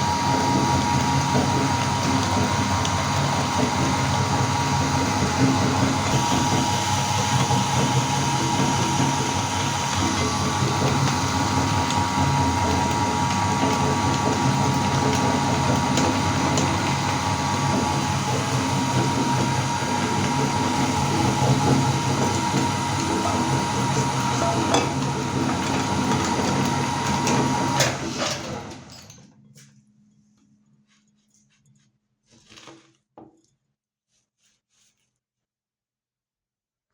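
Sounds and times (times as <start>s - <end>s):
electric meat grinder running: 0.0s - 29.2s.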